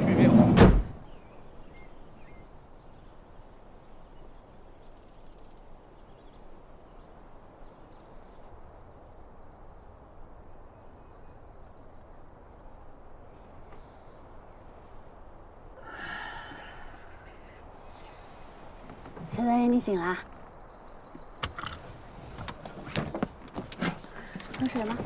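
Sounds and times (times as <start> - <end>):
low background hiss: 0.0 - 25.0
faint bird chirps: 1.0 - 15.2, 15.8 - 22.2.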